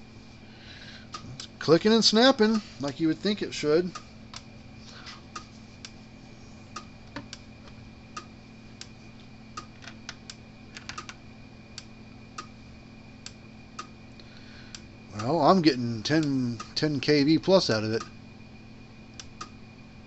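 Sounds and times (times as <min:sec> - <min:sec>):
faint steady hum: 0:00.0 - 0:20.0
electric fence clicks and snaps: 0:09.6 - 0:11.2, 0:19.2 - 0:19.6.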